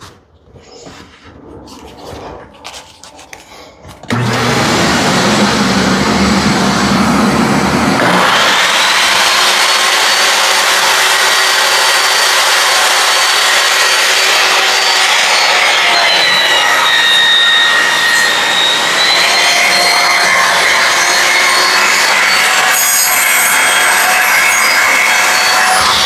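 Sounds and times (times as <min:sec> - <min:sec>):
table saw motor whining: 0:04.0 - 0:26.0.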